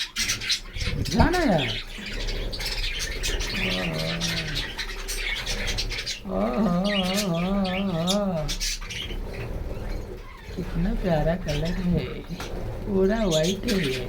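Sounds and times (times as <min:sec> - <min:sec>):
budgerigars chattering: 0:00.0 - 0:14.0
low wavering hum-like voice: 0:03.5 - 0:04.8, 0:06.2 - 0:08.6.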